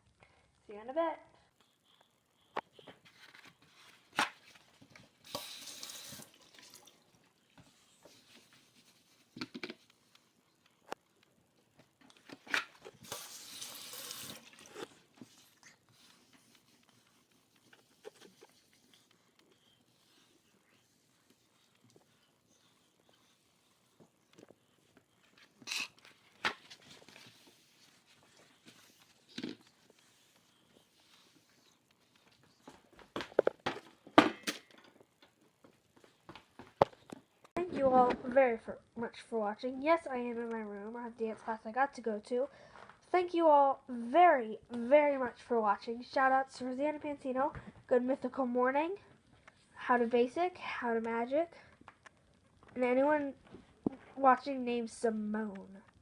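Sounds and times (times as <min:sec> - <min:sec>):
rustling: 0:01.7 - 0:05.3, 0:06.0 - 0:37.5
sink tap running: 0:05.2 - 0:06.9, 0:13.0 - 0:14.8.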